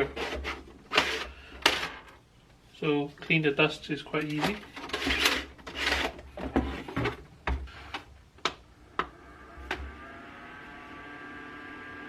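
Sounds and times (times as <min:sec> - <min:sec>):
plastic rustling scrape: 0:00.0 - 0:02.2, 0:04.4 - 0:07.1.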